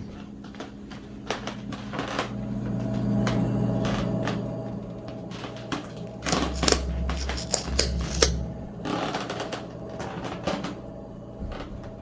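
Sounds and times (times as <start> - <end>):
low hum: 2.6 - 9.3
mechanical clicks and knocks: 6.2 - 8.4.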